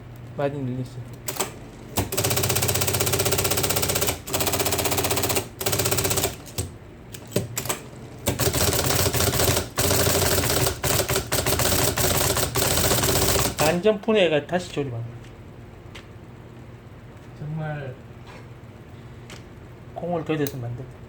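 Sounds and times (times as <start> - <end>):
typewriter motor hum: 1.2 - 13.8
electric typewriter typing: 1.2 - 13.9.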